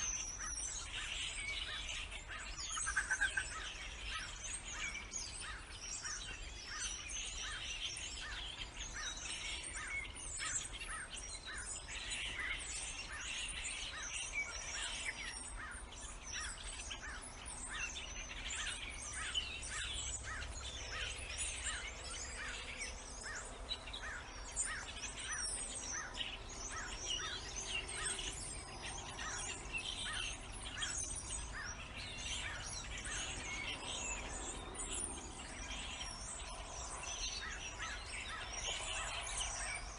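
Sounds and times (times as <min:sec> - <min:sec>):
birds chirping and singing: 0:00.0 - 0:39.9.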